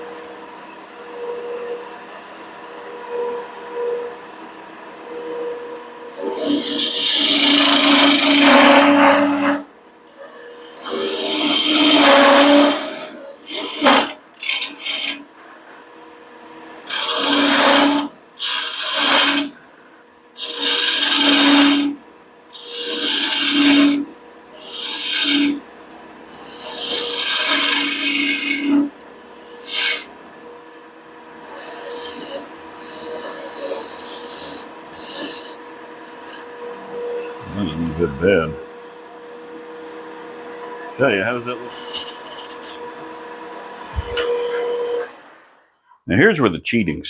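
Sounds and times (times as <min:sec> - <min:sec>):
lathe motor hum: 0:02.8 - 0:19.6, 0:20.3 - 0:45.5
turning tool cutting wood on lathe: 0:06.2 - 0:15.3, 0:16.9 - 0:19.6, 0:20.4 - 0:25.7, 0:26.3 - 0:38.6, 0:41.0 - 0:45.1.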